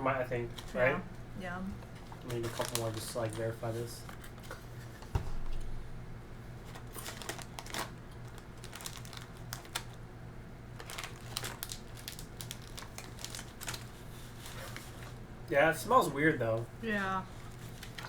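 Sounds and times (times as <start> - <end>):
popcorn bag crinkling: 2.2 - 4.0, 6.7 - 10.1, 10.7 - 15.2, 17.3 - 18.0.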